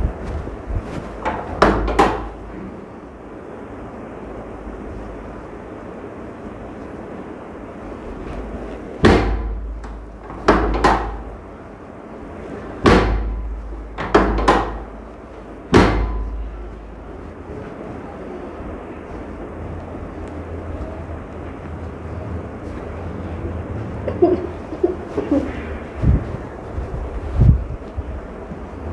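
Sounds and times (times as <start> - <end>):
sharp thuds of chiropractic thrusts: 9.0 - 9.6, 12.8 - 13.4.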